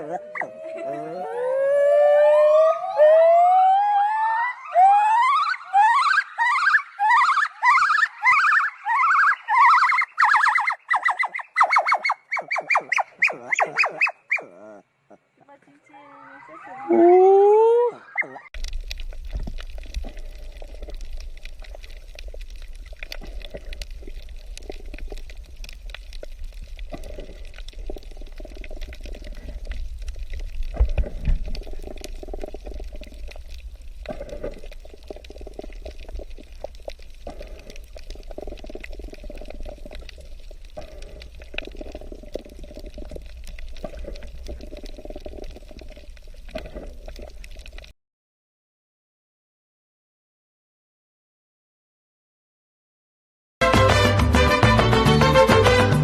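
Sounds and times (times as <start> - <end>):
water gurgling and sloshing: 18.0 - 47.9.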